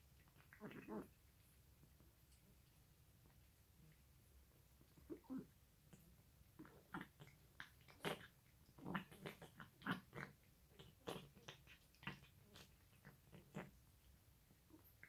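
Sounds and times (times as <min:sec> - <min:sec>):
cat chewing wet food: 0:05.8 - 0:14.1.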